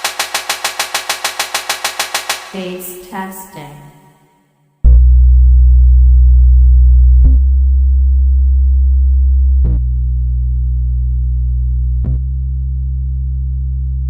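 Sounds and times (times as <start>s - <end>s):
low bass test tones: 4.8s - 14.0s.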